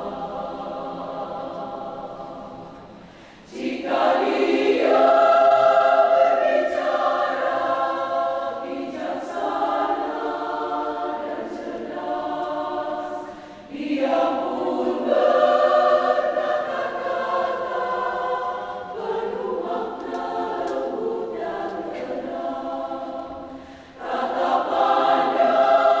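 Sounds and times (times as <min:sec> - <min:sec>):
women's choir singing a hymn: 0:00.0 - 0:26.0
singers breathing: 0:02.8 - 0:03.6, 0:13.2 - 0:13.8, 0:23.5 - 0:24.0.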